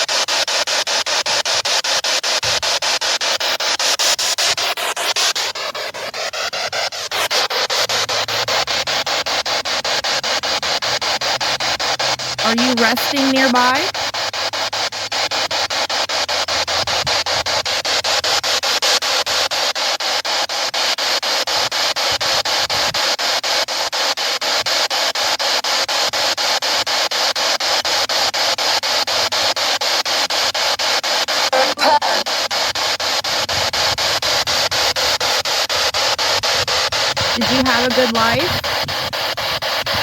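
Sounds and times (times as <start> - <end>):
radio static sweeping: 0.0 - 20.1, 28.1 - 40.0
pitched radio sound: 4.0 - 8.4, 12.4 - 14.1, 31.3 - 40.0.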